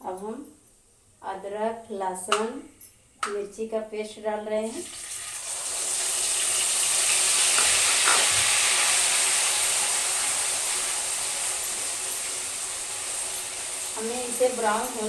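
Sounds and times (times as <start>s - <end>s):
paste sizzling in hot oil: 4.7s - 15.0s.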